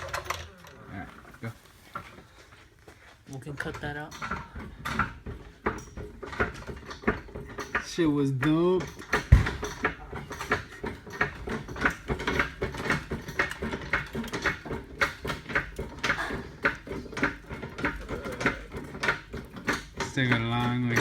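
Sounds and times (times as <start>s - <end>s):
metal car parts clanking: 0.0s - 2.3s, 3.4s - 21.0s
heavy low thump: 9.3s - 9.8s.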